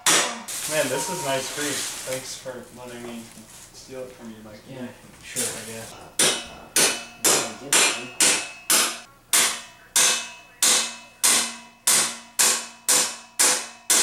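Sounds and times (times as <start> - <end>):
hammer striking metal: 0.0 - 0.4, 6.2 - 14.0.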